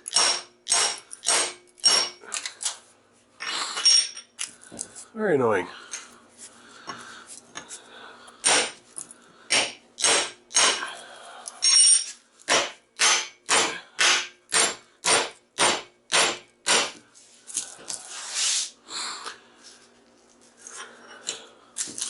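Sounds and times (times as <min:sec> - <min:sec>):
hammer striking metal: 0:00.0 - 0:02.2, 0:08.4 - 0:08.8, 0:09.5 - 0:10.8, 0:11.6 - 0:17.0.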